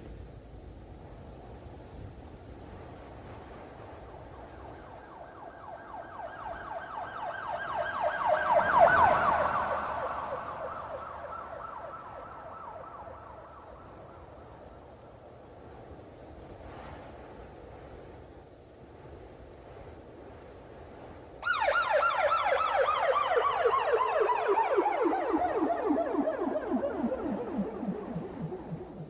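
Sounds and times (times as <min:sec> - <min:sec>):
police siren yelping: 0:05.1 - 0:14.0, 0:21.4 - 0:29.0.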